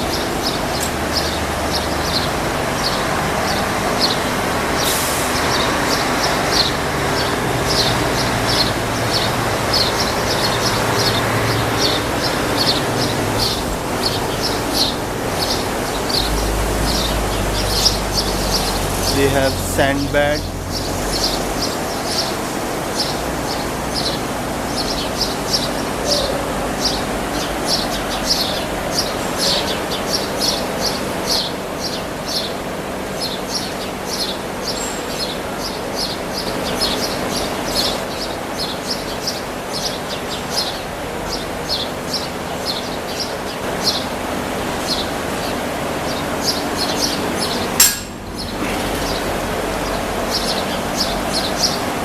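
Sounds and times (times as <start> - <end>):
small birds chirping: 0.0 - 52.0
steady mechanical hum: 0.0 - 52.0.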